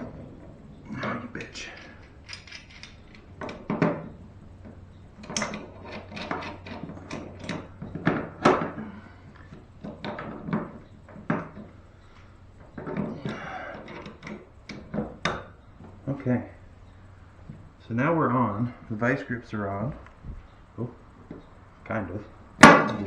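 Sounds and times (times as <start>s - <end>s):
faint steady hum: 0.0s - 23.0s
hand tools clicking on metal: 0.9s - 3.9s, 5.2s - 7.7s.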